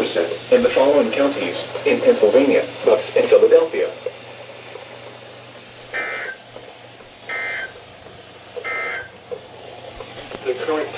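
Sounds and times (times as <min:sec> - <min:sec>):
shrill digital warbles: 0:05.9 - 0:06.4, 0:07.3 - 0:07.7.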